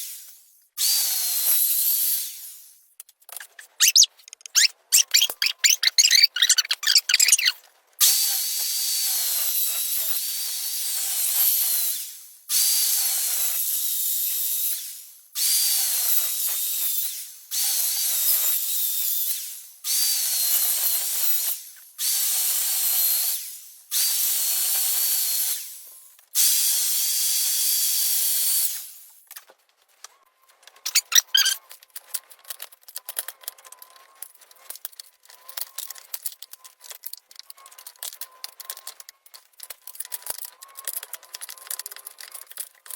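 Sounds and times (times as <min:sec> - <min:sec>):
power tool cutting timber: 0:00.0 - 0:02.7, 0:08.0 - 0:25.8, 0:26.4 - 0:29.1.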